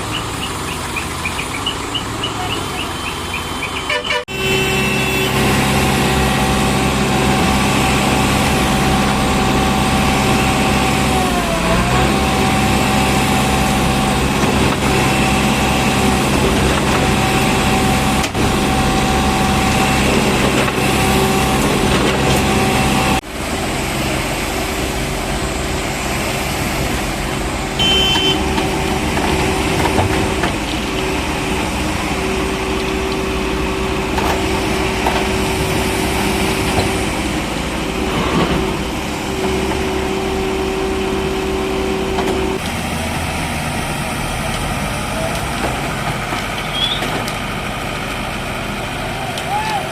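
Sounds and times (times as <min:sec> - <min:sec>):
heavy diesel engine running: 0:00.0 - 0:49.9.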